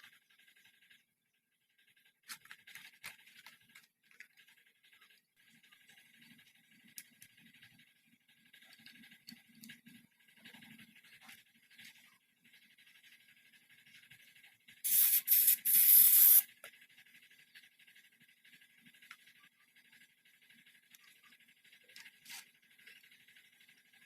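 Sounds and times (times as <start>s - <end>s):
faint handling noises: 2.0s - 13.2s
loud hissing bursts: 14.8s - 16.5s.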